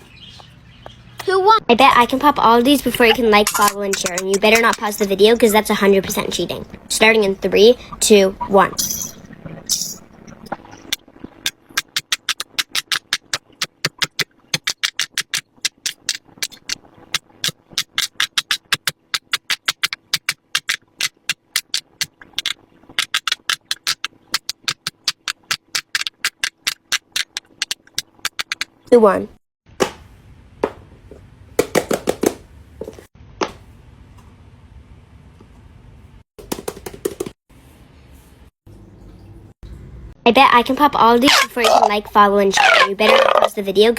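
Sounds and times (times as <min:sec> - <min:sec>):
fidget toy bubbles popping: 0:02.9 - 0:05.2, 0:07.8 - 0:28.7, 0:41.3 - 0:41.9, 0:42.6 - 0:43.6.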